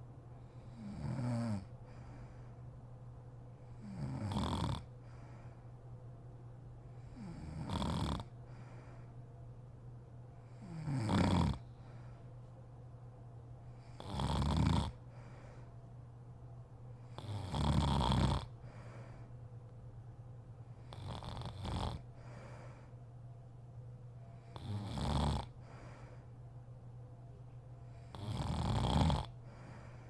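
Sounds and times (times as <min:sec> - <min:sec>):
woman snoring: 0:00.7 - 0:01.7, 0:03.8 - 0:04.9, 0:07.1 - 0:08.3, 0:10.6 - 0:11.6, 0:14.0 - 0:15.0, 0:17.1 - 0:18.5, 0:20.9 - 0:22.1, 0:24.6 - 0:25.6, 0:28.1 - 0:29.8.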